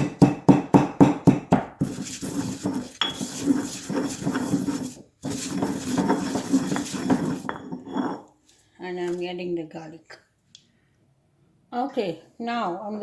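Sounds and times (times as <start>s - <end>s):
pestle grinding in a mortar: 0.0s - 8.2s.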